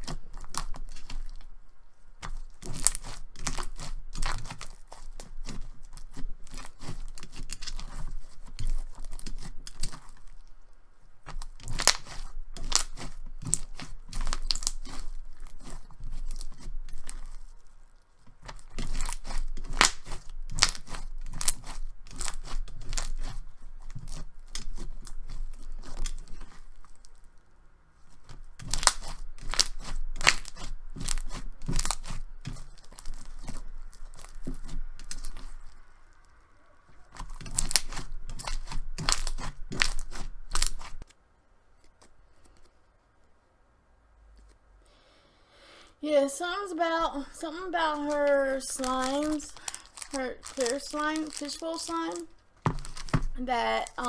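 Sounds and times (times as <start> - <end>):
crunchy slime squeezed by hand: 11.3 - 17.6, 18.4 - 27.2, 28.2 - 35.9, 37.0 - 41.0, 48.9 - 54.0.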